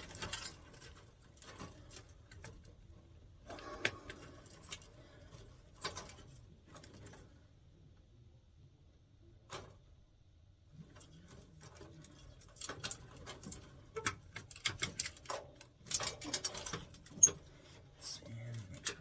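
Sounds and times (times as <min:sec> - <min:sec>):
plastic clicks and rattles: 0:10.8 - 0:17.4.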